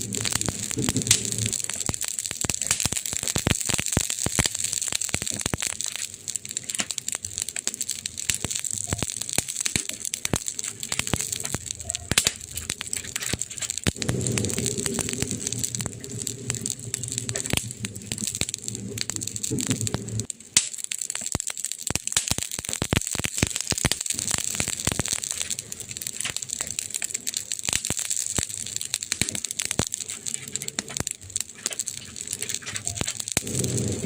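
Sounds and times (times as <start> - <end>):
wood fire crackling: 0.0 - 34.0
low rumble: 11.0 - 20.3, 32.2 - 34.0.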